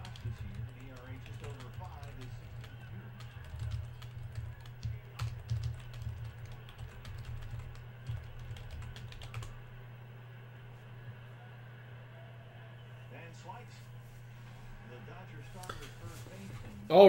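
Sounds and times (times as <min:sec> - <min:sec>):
computer keyboard typing: 0:00.0 - 0:09.6
steady low hum: 0:00.0 - 0:17.0.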